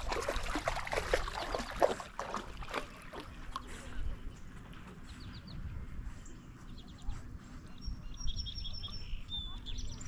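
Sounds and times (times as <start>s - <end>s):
small birds chirping: 2.6s - 10.0s.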